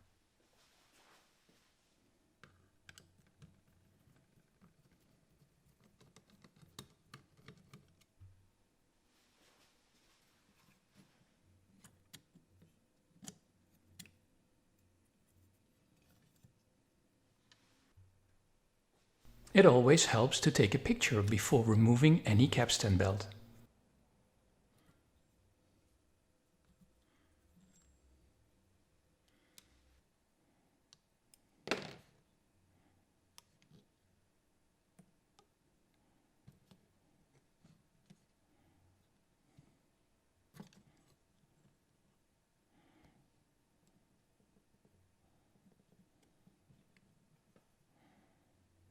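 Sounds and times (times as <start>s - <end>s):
rustling noise: 0.4s - 2.0s, 9.0s - 11.4s
small clicks and taps of tools: 2.4s - 8.2s.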